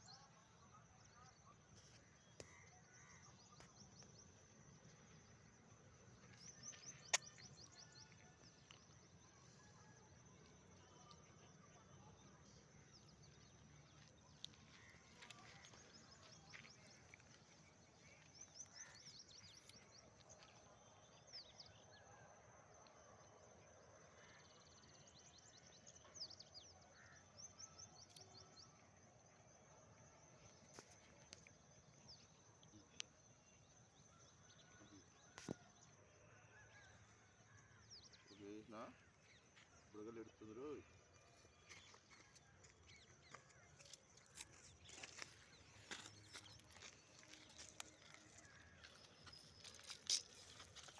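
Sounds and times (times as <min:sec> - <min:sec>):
small birds chirping: 0:06.2 - 0:09.6, 0:10.4 - 0:20.5, 0:38.3 - 0:50.9.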